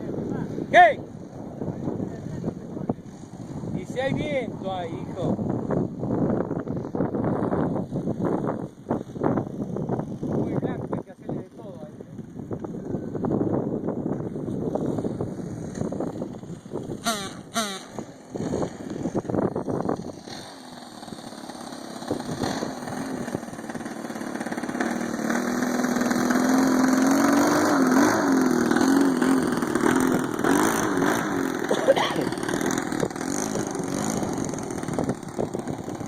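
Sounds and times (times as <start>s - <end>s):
propeller aircraft engine droning: 0.0s - 36.0s.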